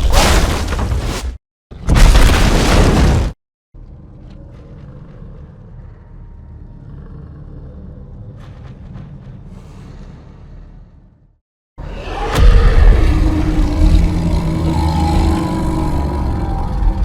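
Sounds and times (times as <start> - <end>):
loud boom: 12.1 - 16.1.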